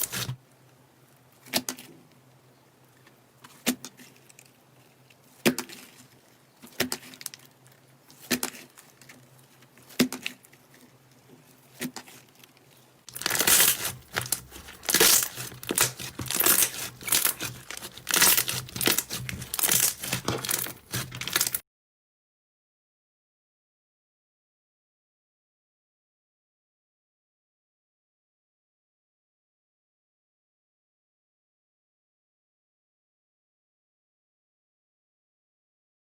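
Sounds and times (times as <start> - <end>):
slime crackling when squeezed: 13.1 - 21.6
slime popping: 13.1 - 21.6.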